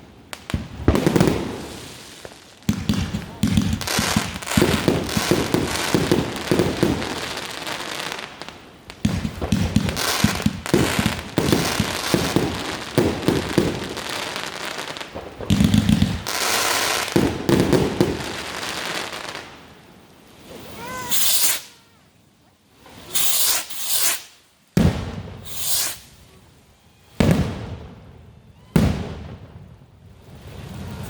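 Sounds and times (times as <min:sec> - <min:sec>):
fireworks popping and crackling: 0:00.0 - 0:22.0, 0:22.9 - 0:31.0.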